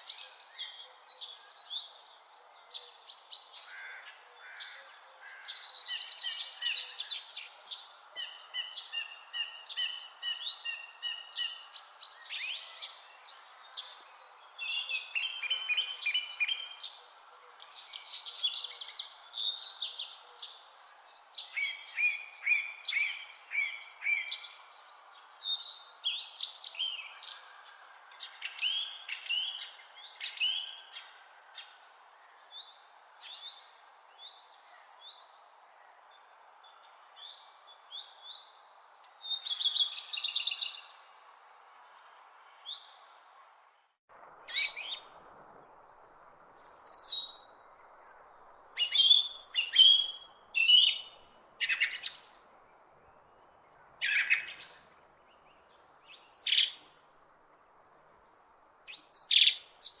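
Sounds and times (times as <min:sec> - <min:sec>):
birds chirping: 0:44.3 - 1:00.0.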